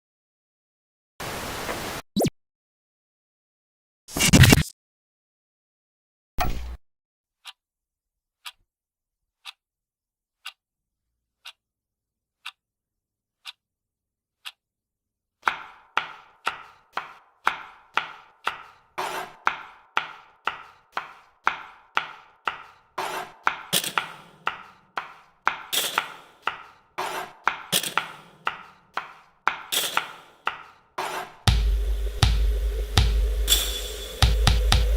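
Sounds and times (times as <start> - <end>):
knocks and taps: 15.4 - 18.8, 23.4 - 26.8, 27.4 - 30.8, 31.5 - 34.9
sharp clock-like ticks: 15.4 - 26.8, 27.4 - 30.8
heavy knock: 31.5 - 34.9.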